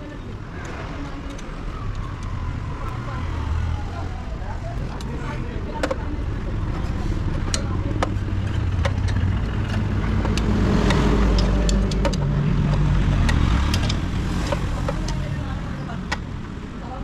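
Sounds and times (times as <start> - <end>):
vehicle engine running: 1.2 - 16.8
sharp clicks: 7.4 - 15.3.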